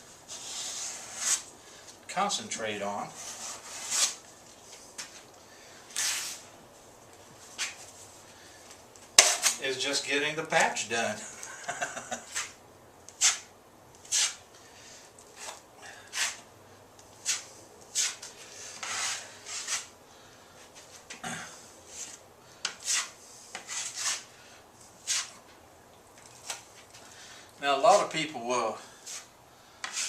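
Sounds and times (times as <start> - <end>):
taping knife scraping wall: 0.3 - 1.5, 3.1 - 4.3, 9.2 - 9.6, 12.2 - 14.4, 15.3 - 16.4, 17.2 - 19.9, 21.9 - 24.4, 25.0 - 25.4, 29.0 - 30.0.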